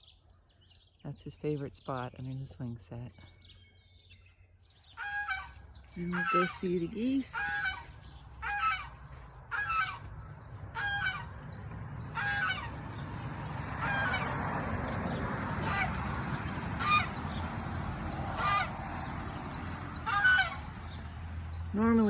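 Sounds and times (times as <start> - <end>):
geese honking: 4.9 - 22.0.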